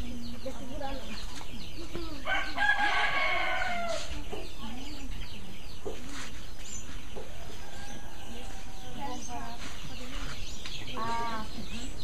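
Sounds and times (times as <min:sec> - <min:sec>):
rooster crowing: 0:02.3 - 0:04.1.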